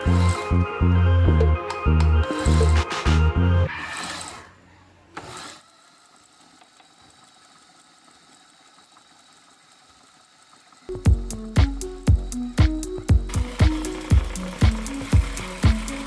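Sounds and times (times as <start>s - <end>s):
background music: 0.0s - 3.9s, 10.9s - 16.0s.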